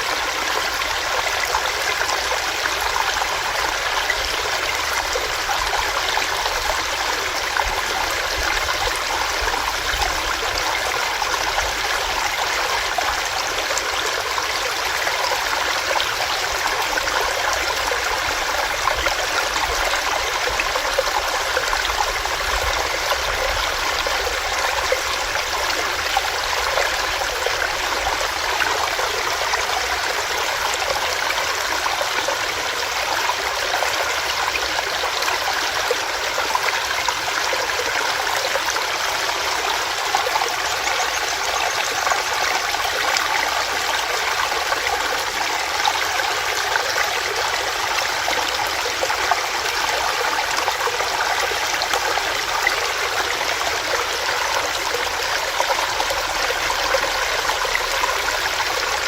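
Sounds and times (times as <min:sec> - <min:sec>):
stream running over rocks: 0:00.0 - 0:59.0.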